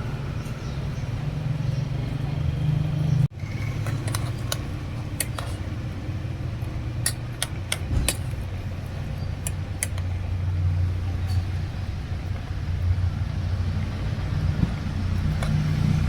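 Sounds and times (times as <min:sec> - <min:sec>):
steady low hum: 0:03.2 - 0:16.0
sharp clicks and clinks: 0:03.5 - 0:05.7, 0:07.0 - 0:08.5.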